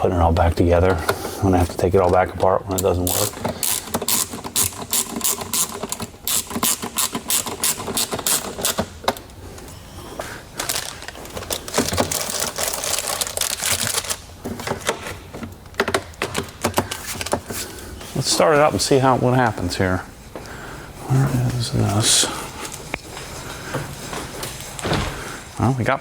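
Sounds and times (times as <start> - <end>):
hand ratchet clicking: 2.8 - 8.9.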